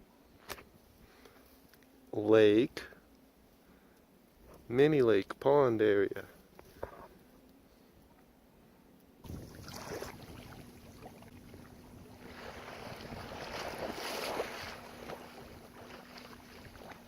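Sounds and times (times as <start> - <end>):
kayak paddle dipping: 9.2 - 17.0
water splashing against hull: 9.2 - 17.0.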